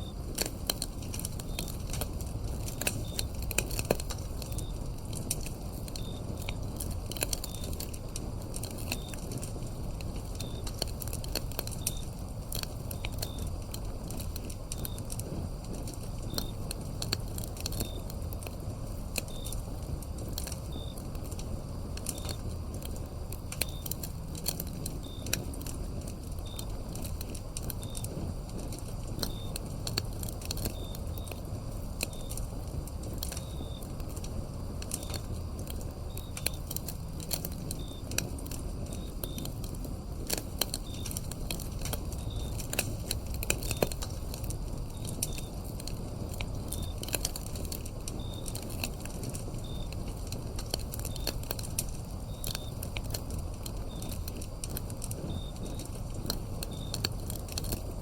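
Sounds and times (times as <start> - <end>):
crickets chirping: 0.0 - 58.0
low steady rumble: 0.0 - 58.0
wood fire crackling and popping: 0.0 - 58.0.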